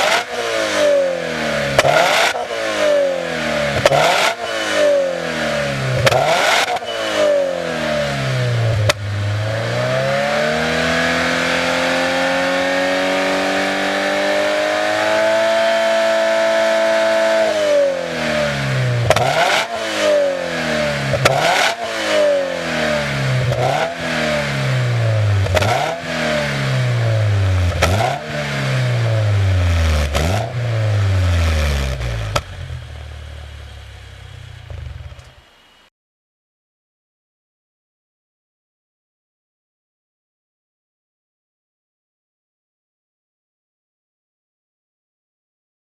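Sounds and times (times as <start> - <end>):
car engine revving: 0.0 - 35.8.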